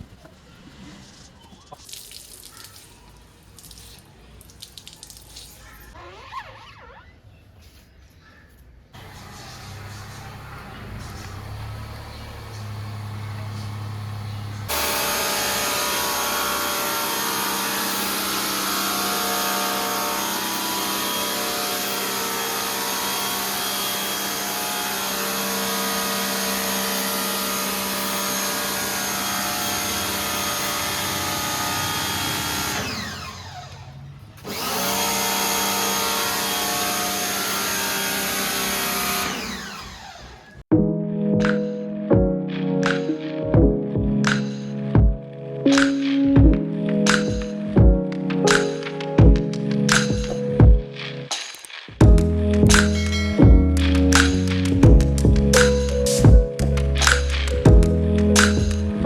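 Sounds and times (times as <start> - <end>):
pressure washer motor whining: 9.0 - 40.6.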